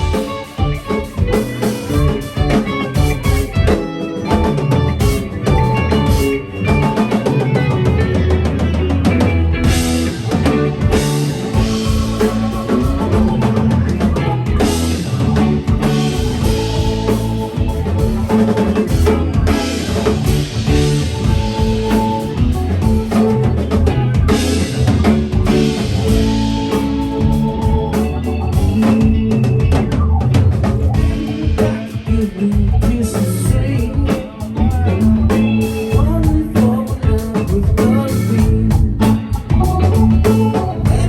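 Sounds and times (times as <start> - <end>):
band playing instrumental: 0.0 - 41.0.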